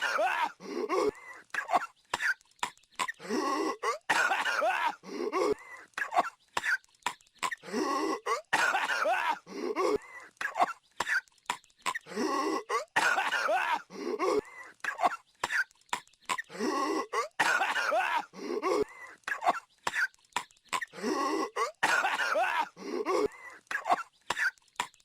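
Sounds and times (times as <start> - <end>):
cartoon character coughing: 8.2 - 11.2, 16.3 - 20.1, 20.8 - 24.6.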